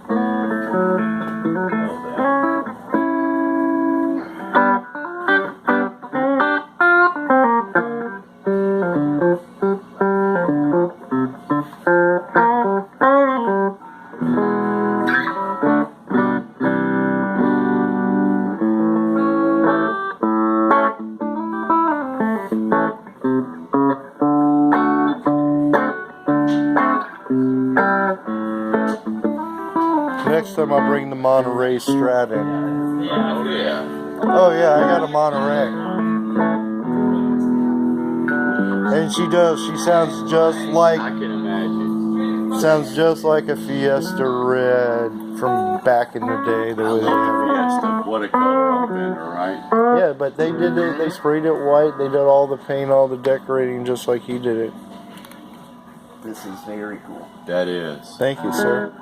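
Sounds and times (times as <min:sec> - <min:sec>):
electric guitar through amplifier: 0:00.0 - 0:59.0.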